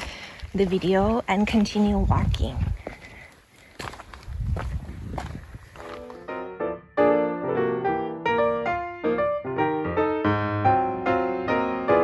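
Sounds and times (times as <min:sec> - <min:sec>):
footsteps on rocky trail: 0:00.0 - 0:06.3
piano music: 0:05.9 - 0:12.0.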